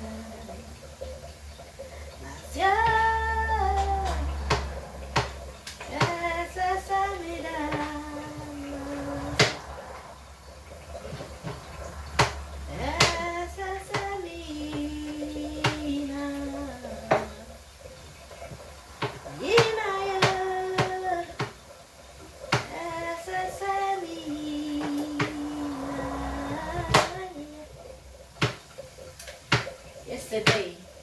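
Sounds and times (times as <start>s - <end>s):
woman singing long notes: 12.7s - 17.4s, 22.7s - 27.8s.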